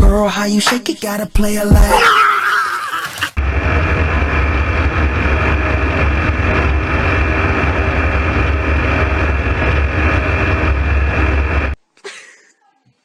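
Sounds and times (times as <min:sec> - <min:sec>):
engine drone: 0:03.4 - 0:11.8
faint high whine: 0:03.4 - 0:11.8.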